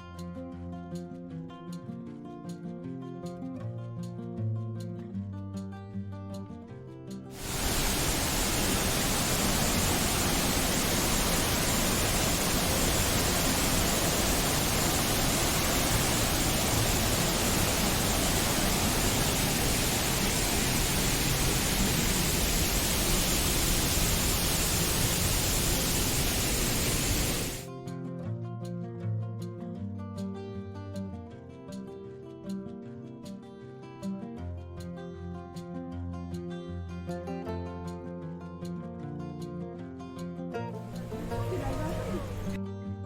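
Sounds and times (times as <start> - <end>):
acoustic guitar background music: 0.0 - 7.4, 27.7 - 43.0
waterfall rushing: 7.4 - 27.6, 40.9 - 42.6.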